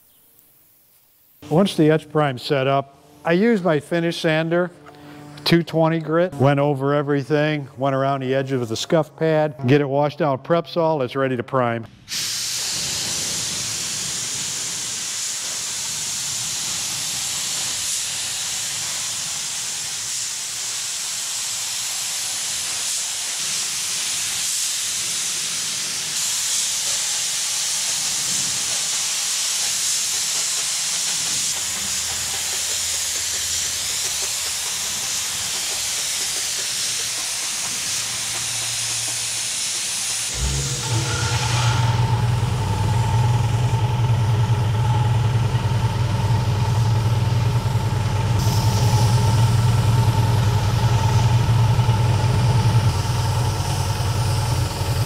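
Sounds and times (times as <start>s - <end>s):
steady low hum: 1.4s - 9.1s, 40.3s - 55.0s
spray gun hissing: 12.1s - 55.0s.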